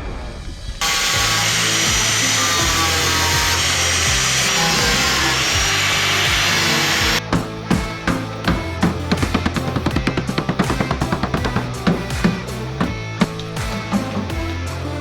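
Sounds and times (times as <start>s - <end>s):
power tool cutting sheet steel: 0.8s - 7.2s
background music with steady beat: 0.8s - 15.0s.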